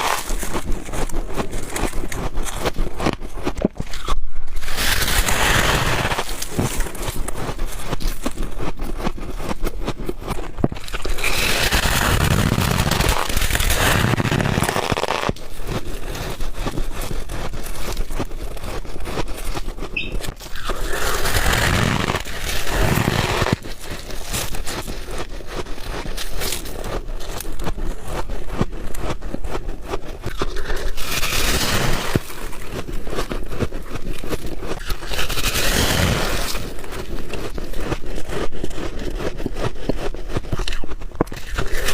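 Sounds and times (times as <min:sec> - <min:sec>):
chewing ice: 0:00.0 - 0:41.9.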